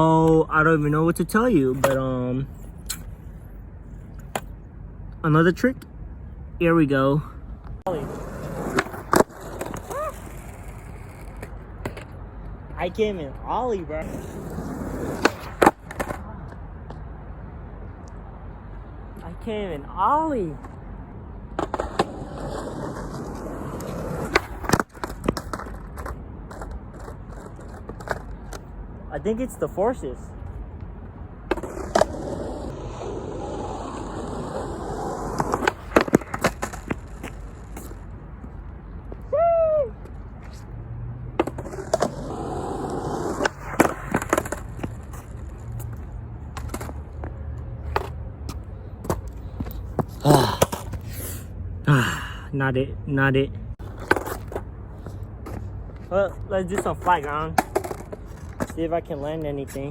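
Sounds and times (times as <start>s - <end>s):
skateboard wheels rolling: 7.9s - 17.0s, 20.3s - 28.8s, 29.4s - 51.5s, 53.8s - 59.9s
skateboard clacks: 8.0s - 12.2s, 21.6s - 28.7s, 33.6s - 38.0s, 41.4s - 51.0s, 56.7s - 59.5s.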